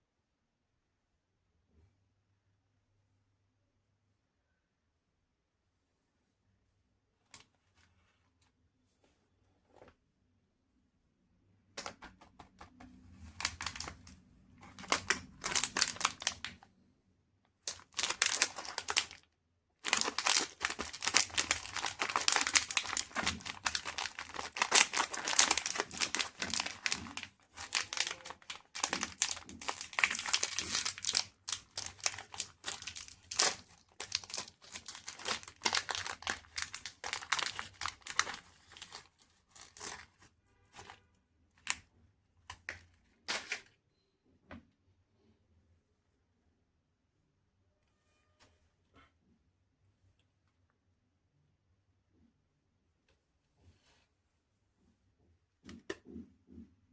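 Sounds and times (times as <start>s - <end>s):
wrapper crinkling and tearing: 13.3s - 16.6s, 17.7s - 41.0s.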